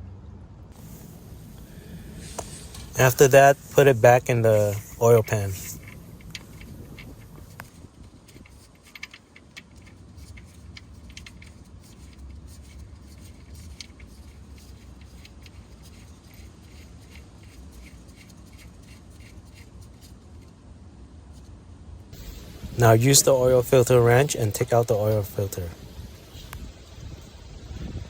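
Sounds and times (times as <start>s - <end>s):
low hum: 0.0s - 28.0s
ratchet clicking: 0.8s - 19.7s.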